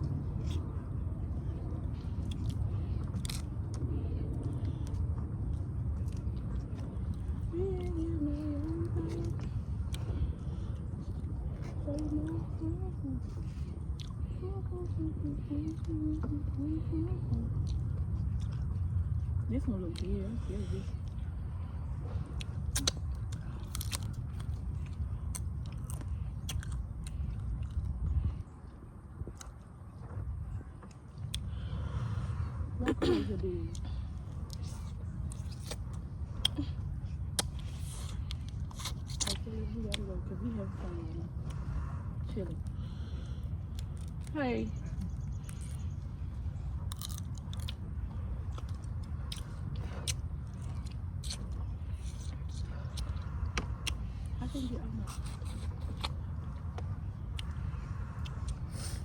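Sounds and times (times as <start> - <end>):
chewing: 0.0 - 32.6, 33.7 - 59.0
steady low rumble: 0.0 - 59.0
crab shell cracking: 46.8 - 47.8.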